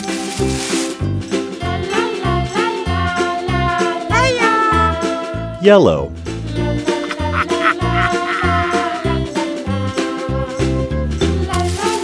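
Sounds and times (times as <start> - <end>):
children's music with bass beat: 0.0 - 12.0.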